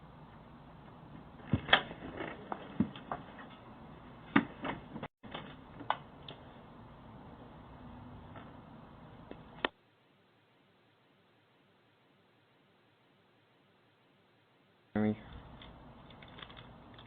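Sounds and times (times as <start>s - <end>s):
faint steady hiss: 6.0s - 17.0s.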